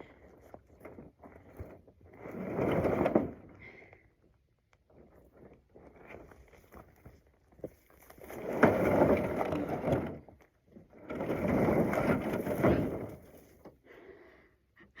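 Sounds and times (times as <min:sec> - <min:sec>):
roof panel scraping over ground: 0:00.6 - 0:03.6, 0:05.0 - 0:13.7.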